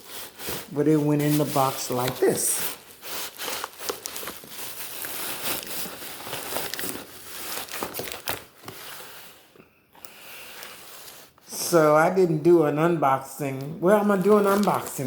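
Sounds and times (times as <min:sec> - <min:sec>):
plastic packaging crinkling: 0:00.0 - 0:11.3, 0:13.9 - 0:15.0.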